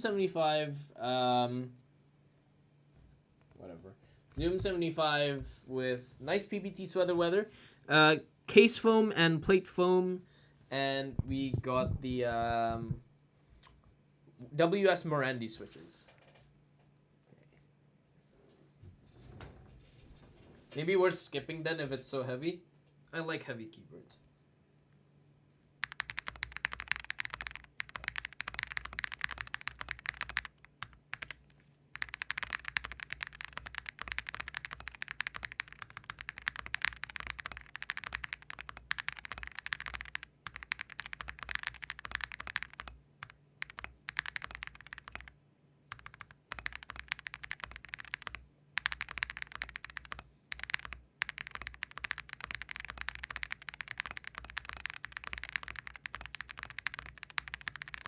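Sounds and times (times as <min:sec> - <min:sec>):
mechanical keyboard typing: 0:25.8 - 0:45.3, 0:45.9 - 0:58.0.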